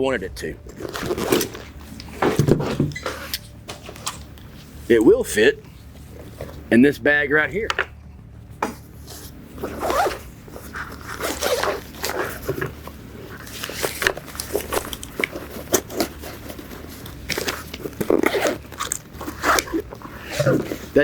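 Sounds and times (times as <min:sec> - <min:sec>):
fabric rustling: 0:08.6 - 0:21.0
zipper of a bag: 0:09.0 - 0:21.0.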